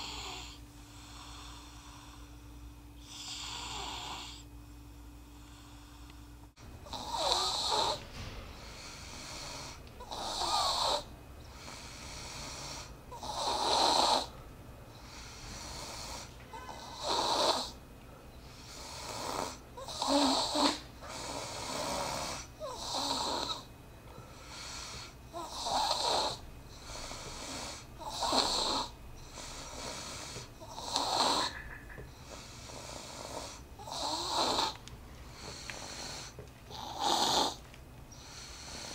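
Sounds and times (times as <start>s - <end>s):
person snoring: 0.0s - 2.4s, 3.0s - 4.5s, 6.8s - 8.0s, 8.8s - 14.4s, 15.1s - 17.8s, 18.5s - 23.7s, 24.4s - 31.5s, 32.2s - 37.6s
quiet breathing: 0.0s - 38.9s.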